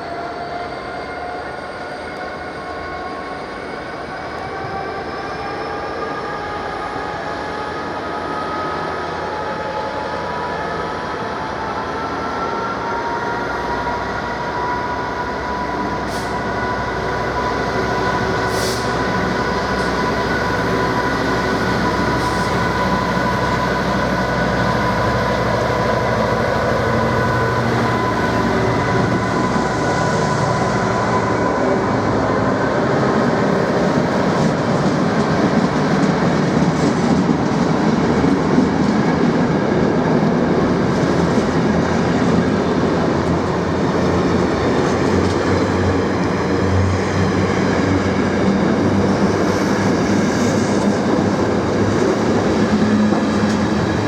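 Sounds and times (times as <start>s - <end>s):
train whine: 0.0s - 54.0s.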